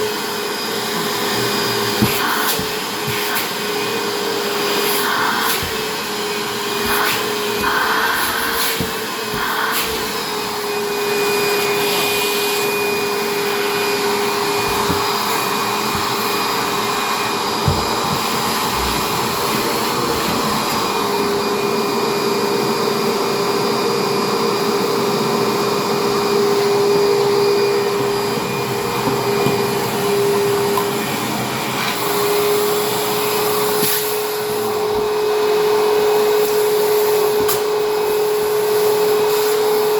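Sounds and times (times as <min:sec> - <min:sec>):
vacuum cleaner running: 0:00.0 - 0:39.9
knock: 0:17.6 - 0:19.6.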